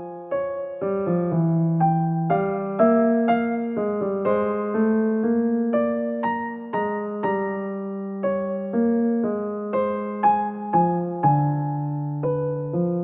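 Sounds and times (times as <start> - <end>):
slow piano melody: 0.0 - 13.0.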